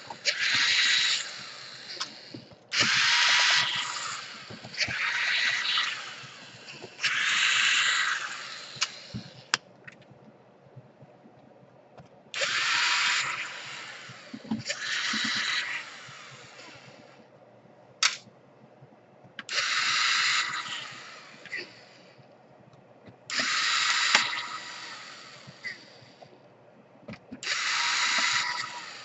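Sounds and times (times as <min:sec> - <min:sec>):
cordless drill bursts: 0:00.3 - 0:06.2, 0:12.4 - 0:16.4, 0:19.5 - 0:21.4, 0:23.3 - 0:25.6, 0:27.4 - 0:29.0
sharp click: 0:18.0 - 0:18.3.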